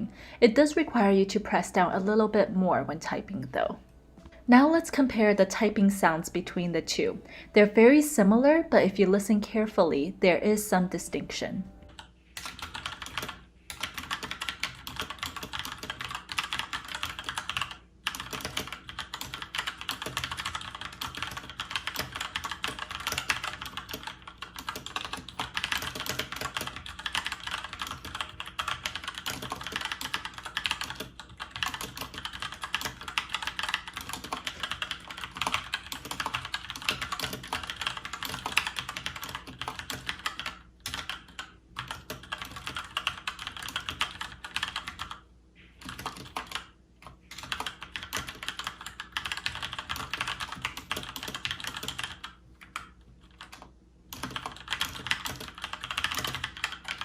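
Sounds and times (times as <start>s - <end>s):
fast typing on mechanical keyboard: 11.9s - 45.2s, 45.8s - 57.0s.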